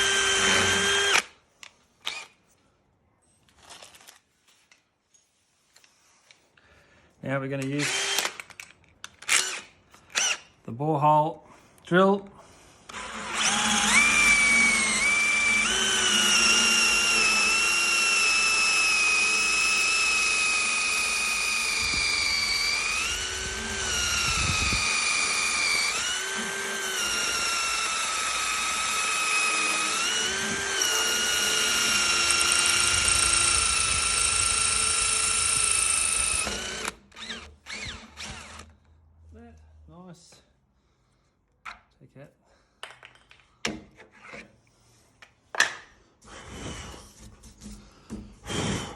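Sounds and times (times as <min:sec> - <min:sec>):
electric drill whining: 0:00.0 - 0:01.4, 0:07.8 - 0:08.5, 0:09.2 - 0:10.5, 0:12.9 - 0:38.8.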